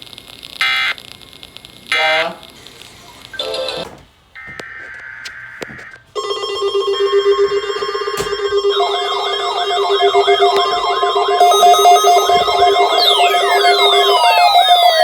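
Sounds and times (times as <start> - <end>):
warbling siren-like tone: 8.7 - 15.0
steady electronic tone: 8.8 - 15.0.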